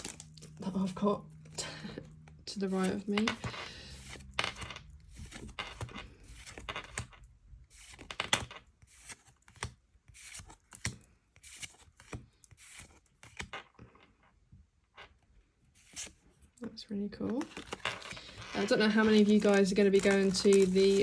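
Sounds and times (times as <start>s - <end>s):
paper and cardboard rustling: 0.0s - 2.0s, 2.6s - 13.4s, 17.3s - 21.0s.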